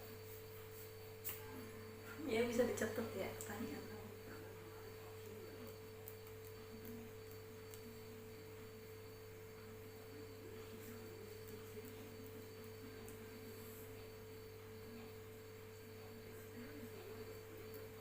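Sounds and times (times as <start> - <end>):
constant mid-pitched tone: 0.0 - 18.0
faint background hum: 0.0 - 18.0.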